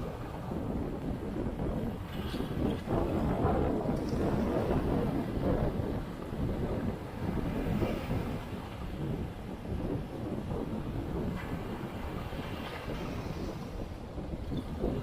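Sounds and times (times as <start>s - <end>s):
waves washing onto sandy beach: 0.0s - 15.0s
wind buffeting microphone: 0.0s - 15.0s.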